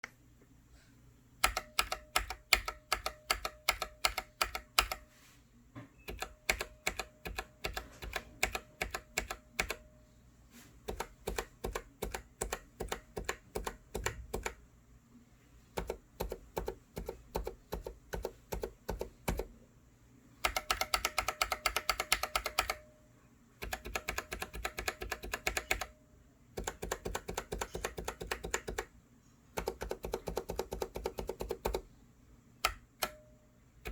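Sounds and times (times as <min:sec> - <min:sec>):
mechanical keyboard typing: 0:01.4 - 0:05.0, 0:06.1 - 0:09.9, 0:10.8 - 0:14.6, 0:15.8 - 0:19.5, 0:20.4 - 0:22.9, 0:23.6 - 0:25.9, 0:26.6 - 0:28.9, 0:29.6 - 0:31.9.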